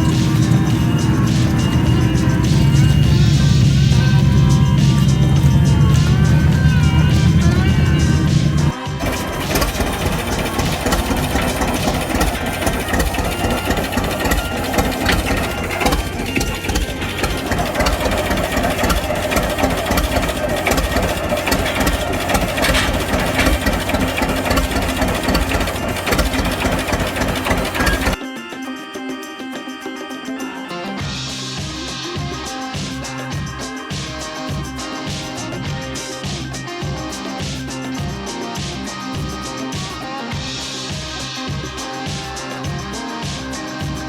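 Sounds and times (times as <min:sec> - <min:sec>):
tractor engine running: 0:00.0 - 0:28.2
background music: 0:00.0 - 0:44.0.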